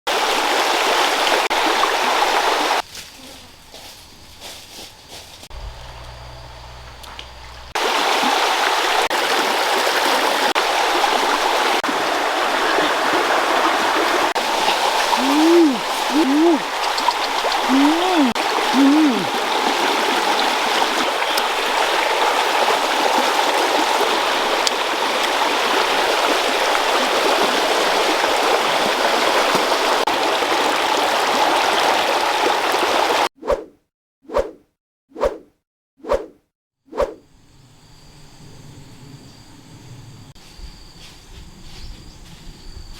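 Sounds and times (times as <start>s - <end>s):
stream water rushing: 0.1s - 2.8s, 7.8s - 33.3s
short rising and falling calls: 15.1s - 16.8s, 17.6s - 19.4s.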